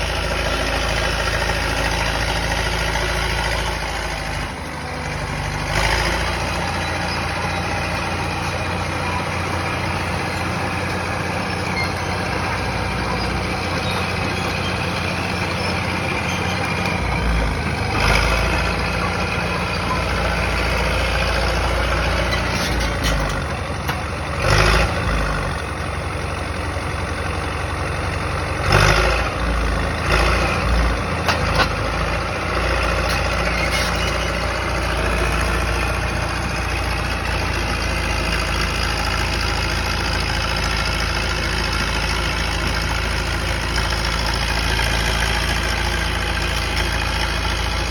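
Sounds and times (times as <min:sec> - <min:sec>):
diesel engine running: 0:00.0 - 0:47.9.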